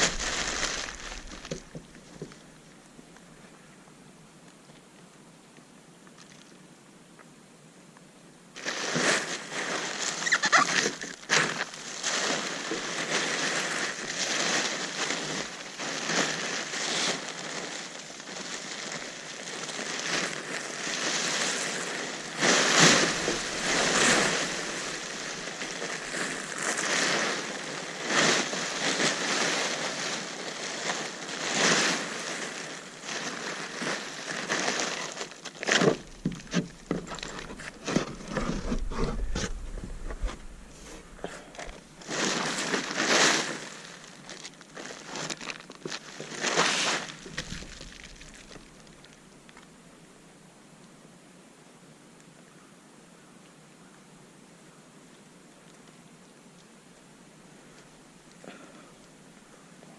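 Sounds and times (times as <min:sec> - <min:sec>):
plastic tarp rustling and crackling: 0:00.0 - 0:02.7, 0:08.6 - 0:49.8.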